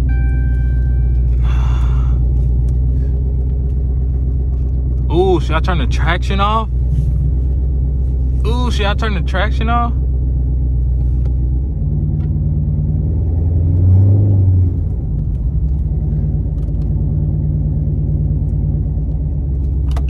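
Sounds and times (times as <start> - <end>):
car engine running at low revs: 0.0 - 20.0.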